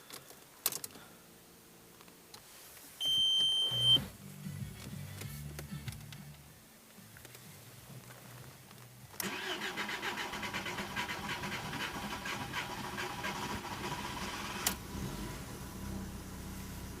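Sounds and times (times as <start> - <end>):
engine running steadily: 7.3 - 17.0
starter cranking car engine: 9.2 - 15.6.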